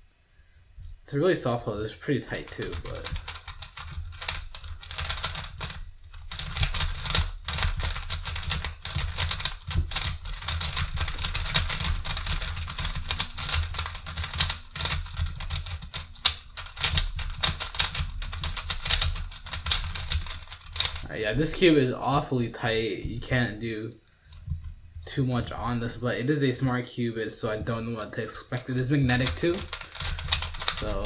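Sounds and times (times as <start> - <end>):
plastic puzzle cube clicking: 29.1 - 31.0.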